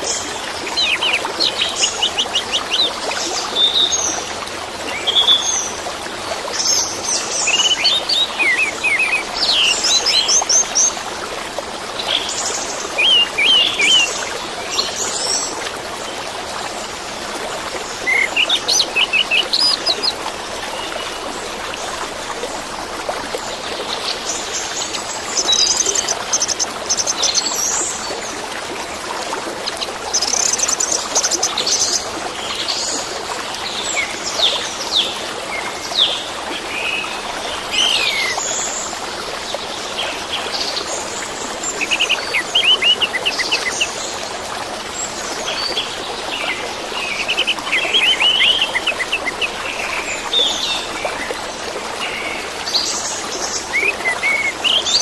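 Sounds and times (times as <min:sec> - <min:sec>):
running water: 0:00.0 - 0:55.0
bird chirping and trilling: 0:53.7 - 0:55.0.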